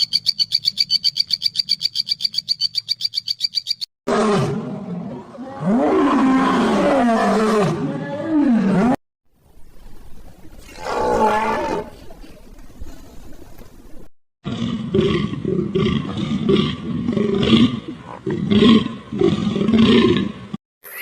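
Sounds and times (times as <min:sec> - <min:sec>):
high-pitched chirping trill: 0:00.0 - 0:03.9.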